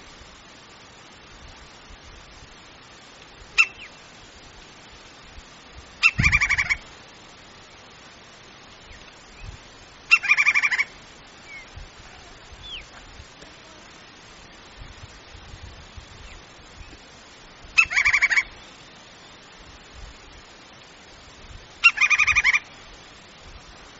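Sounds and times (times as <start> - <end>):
woodpecker calling: 3.6 - 4.1, 6.0 - 6.8, 10.1 - 11.7, 17.8 - 18.7, 21.8 - 22.7.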